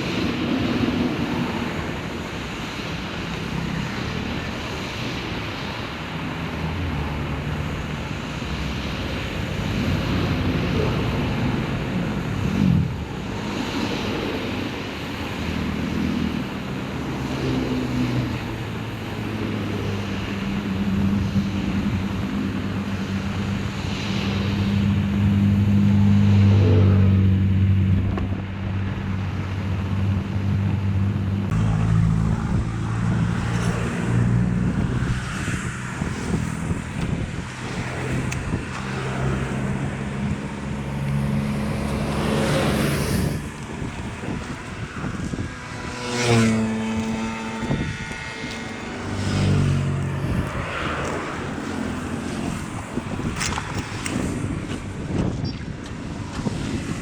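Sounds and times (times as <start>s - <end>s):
engine running: 0.0s - 57.0s
rising and falling whine: 0.0s - 57.0s.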